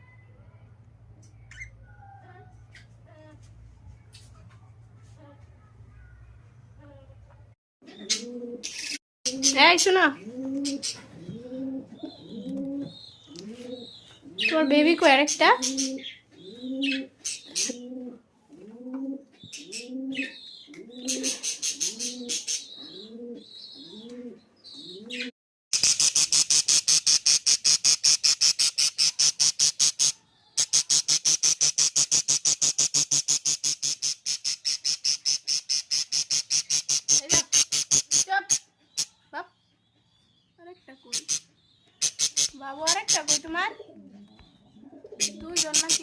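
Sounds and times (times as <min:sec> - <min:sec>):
pigeon cooing: 0:07.8 - 0:14.6, 0:15.6 - 0:25.3, 0:42.0 - 0:46.0.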